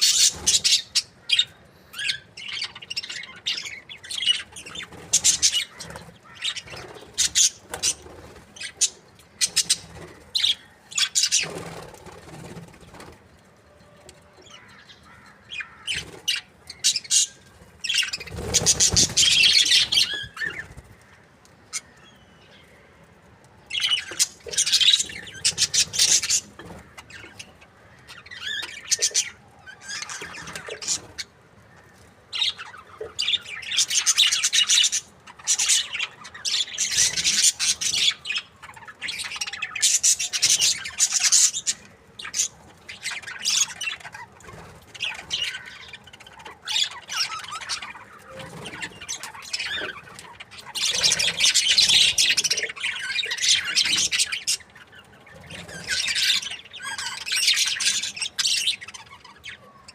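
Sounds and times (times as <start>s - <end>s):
budgerigars chirping: 0.0s - 12.4s, 15.6s - 20.8s, 32.4s - 59.5s.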